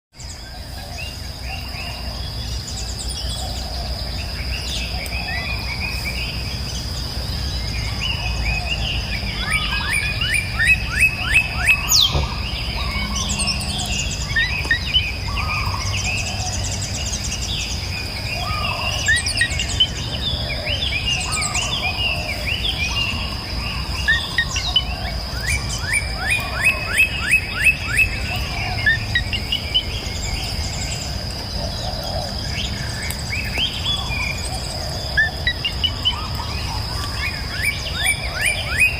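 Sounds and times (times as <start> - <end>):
baby birds chirping: 7.5 - 17.6.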